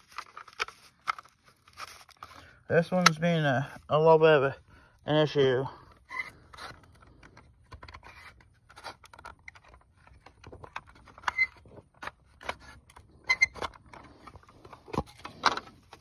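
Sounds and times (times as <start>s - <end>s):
plastic clicks taps and scraping: 6.5s - 16.0s.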